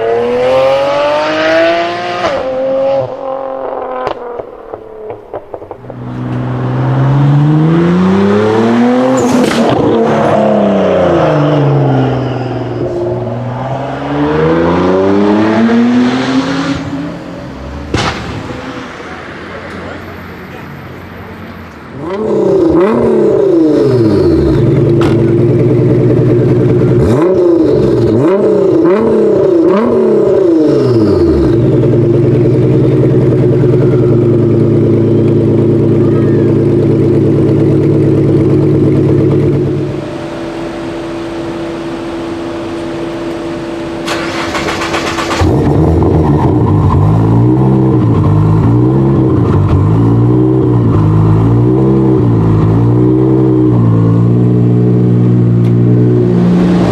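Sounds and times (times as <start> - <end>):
car engine revving: 0.0 - 20.0, 21.9 - 56.9.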